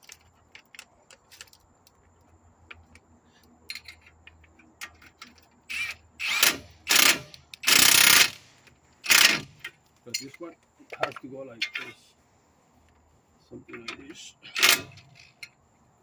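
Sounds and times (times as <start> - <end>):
impact gun driving bolt: 5.7 - 8.4, 14.6 - 15.2
tools clinking on metal: 9.6 - 12.1.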